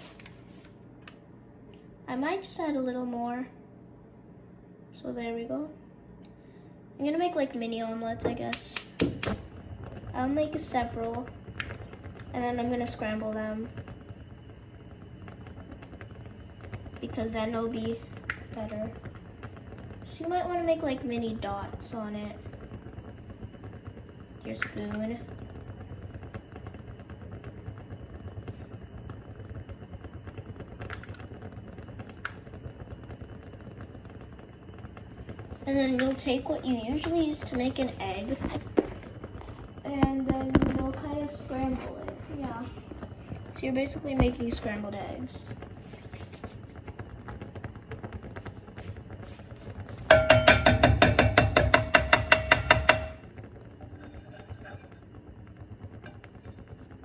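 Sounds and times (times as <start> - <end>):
egg frying crackle: 7.3 - 57.0
sharp clicks: 8.5 - 9.4
utensil striking metal pan: 50.1 - 55.0
light tapping and scraping: 53.8 - 55.0.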